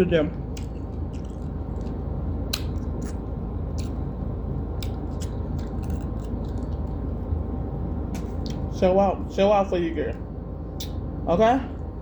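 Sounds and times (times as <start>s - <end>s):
steady low hum: 0.0s - 12.0s
mouth clicks and smacks: 0.5s - 4.0s.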